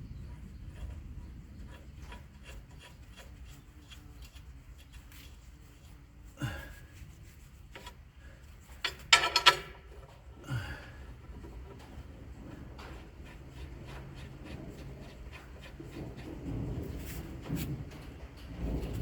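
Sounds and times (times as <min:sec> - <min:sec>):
rubbing and scraping: 0:00.0 - 0:19.0
scraping clatter: 0:06.8 - 0:19.0.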